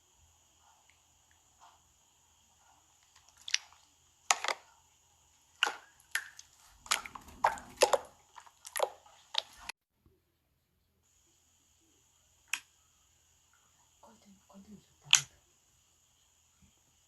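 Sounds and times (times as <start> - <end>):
crunchy food being chewed: 2.6 - 4.7, 5.5 - 9.7.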